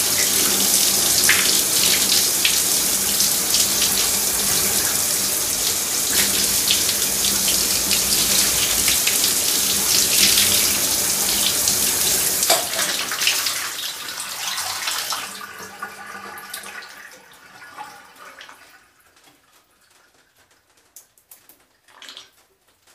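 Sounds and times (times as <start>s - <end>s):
shower spray running: 0.0s - 15.4s
water dripping: 0.0s - 22.9s.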